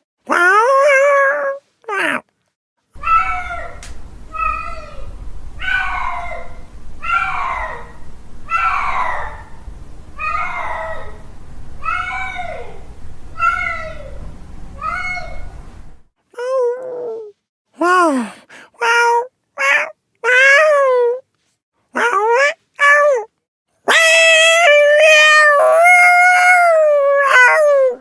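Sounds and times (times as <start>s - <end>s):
cat yowling: 3.0s - 16.0s, 23.9s - 28.0s
low steady hum: 3.0s - 16.1s.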